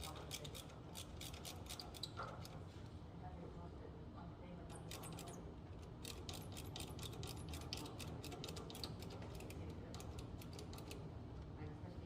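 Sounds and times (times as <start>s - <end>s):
rapid mechanical clicking: 6.0s - 11.1s.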